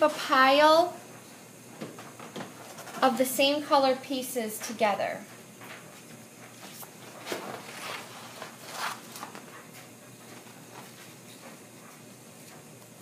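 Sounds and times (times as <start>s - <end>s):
vinyl sheets rustling and scraping: 2.0s - 3.3s, 5.7s - 12.6s.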